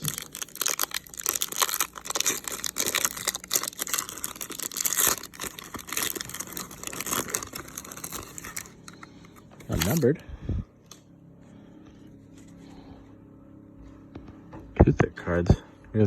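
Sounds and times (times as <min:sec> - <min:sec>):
wrapper crinkling and tearing: 0:00.0 - 0:10.1.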